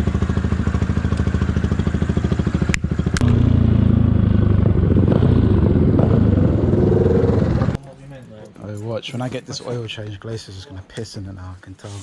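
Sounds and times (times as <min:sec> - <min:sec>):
motorcycle engine running: 0:00.0 - 0:07.8.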